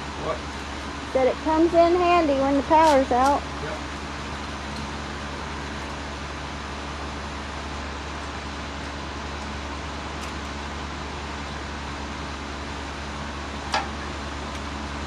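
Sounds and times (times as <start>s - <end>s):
generator engine running: 0.0s - 15.0s.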